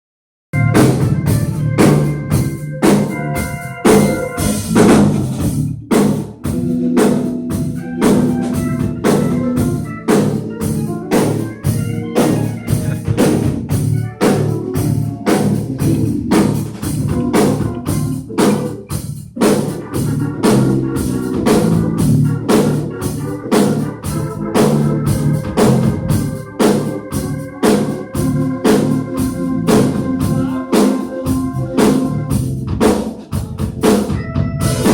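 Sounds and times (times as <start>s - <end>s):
drum kit beat: 0.5s - 34.9s
low bass line: 0.6s - 19.1s, 19.8s - 27.5s, 28.1s - 32.8s
sustained organ chords: 0.6s - 34.9s.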